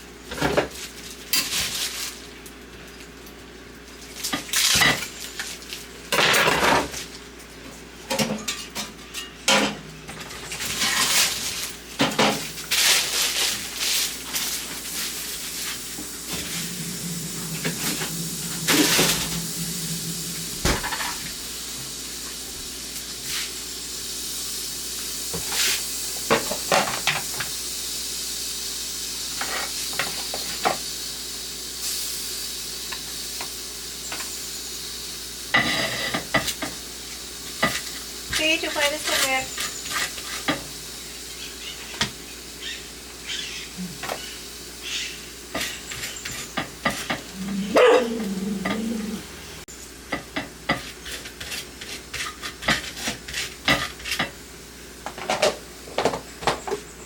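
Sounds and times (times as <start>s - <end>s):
pots and pans clattering: 6.1s - 7.1s, 8.1s - 14.6s, 16.2s - 21.3s, 26.3s - 27.5s, 35.5s - 36.8s, 37.5s - 40.8s, 45.5s - 49.0s, 50.1s - 54.4s, 55.0s - 56.9s
steady hiss: 13.0s - 45.9s.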